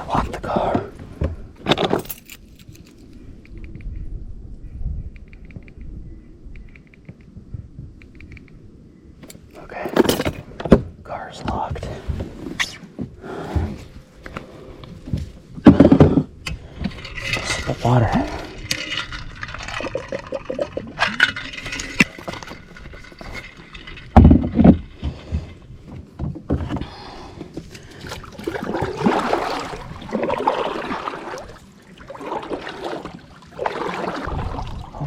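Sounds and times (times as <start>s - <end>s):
paddle strokes swishing water: 28.0s - 35.0s.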